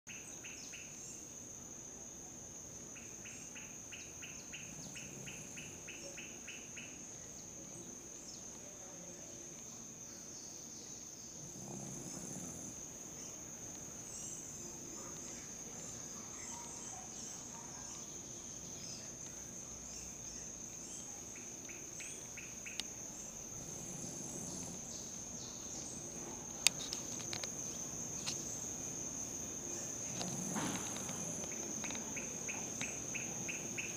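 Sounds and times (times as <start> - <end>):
fast pulsed insect chirping: 0.1 - 33.9
high insect trill: 0.1 - 33.9
small dog snoring: 11.4 - 12.9, 23.5 - 25.0.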